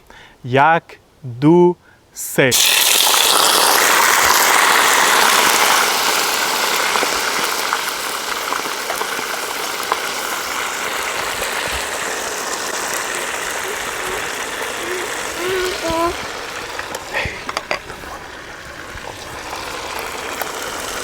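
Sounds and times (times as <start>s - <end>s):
chicken sizzling in hot oil: 2.5s - 21.0s
small pops of frying oil: 2.6s - 13.5s.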